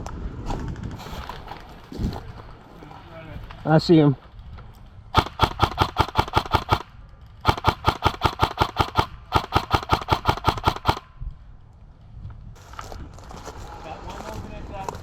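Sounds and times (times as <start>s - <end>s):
airsoft rifle rapid shots: 5.1s - 11.1s.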